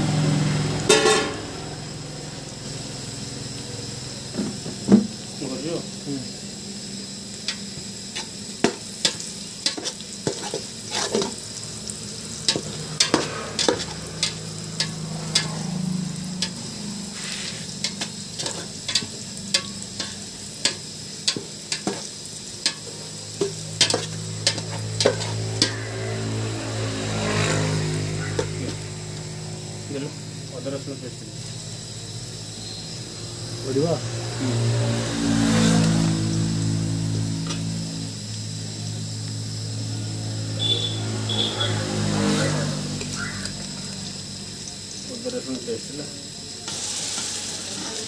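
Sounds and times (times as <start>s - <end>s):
food sizzling in a pan: 0.0s - 48.0s
spatula scraping a pan: 0.8s - 1.6s, 7.5s - 29.1s.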